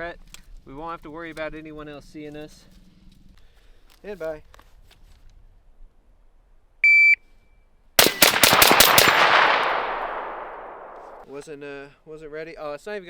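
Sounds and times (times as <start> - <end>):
shot timer beep: 6.8 - 7.2
rapid rifle shots with echo: 8.0 - 11.4.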